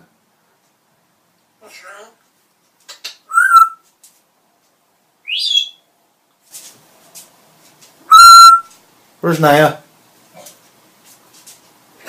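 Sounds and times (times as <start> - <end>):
parrot chirping: 3.0 - 3.8, 5.2 - 5.9, 8.1 - 8.7
parrot whistling: 3.3 - 3.8, 5.2 - 5.8, 8.1 - 8.7.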